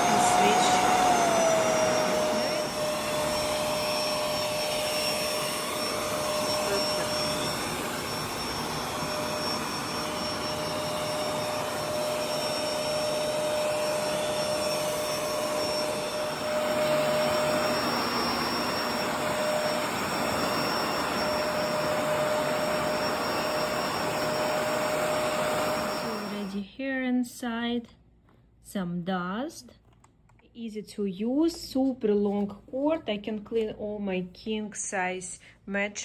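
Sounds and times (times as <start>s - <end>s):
vacuum cleaner running: 0.0s - 26.7s.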